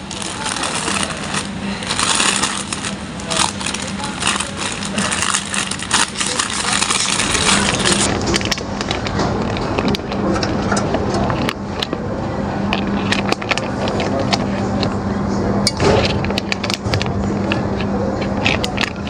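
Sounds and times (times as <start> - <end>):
packaging rustling and clicking: 0.0 - 9.2
steady low hum: 0.0 - 19.0.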